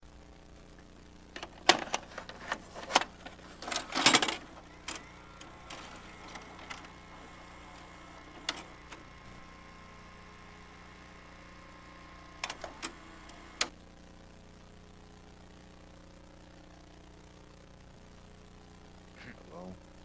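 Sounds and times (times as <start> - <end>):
faint steady hum: 0.1 - 20.0
sharp clicks and clattering knocks: 1.4 - 13.7.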